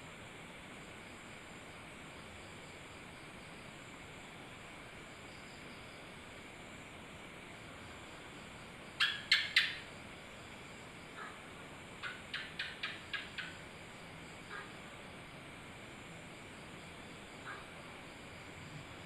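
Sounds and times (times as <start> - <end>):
faint hiss: 0.0 - 19.0
animal chirps: 9.0 - 9.9, 12.0 - 13.6.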